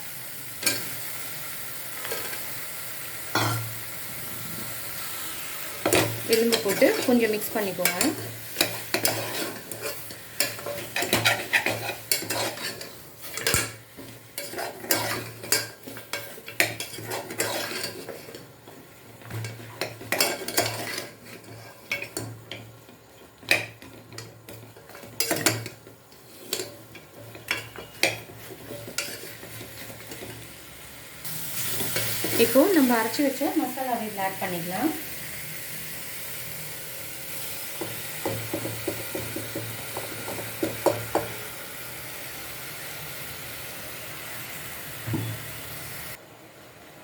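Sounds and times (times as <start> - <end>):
oil sizzling in a pot: 0.0 - 47.0
utensil clinking and scraping pot: 5.8 - 30.4.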